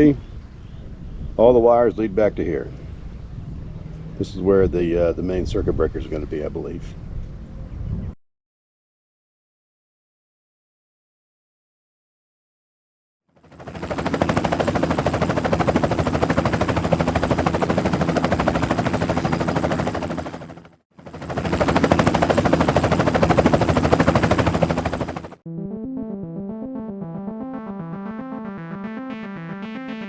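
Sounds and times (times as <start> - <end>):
synthesizer music: 25.4 - 30.0.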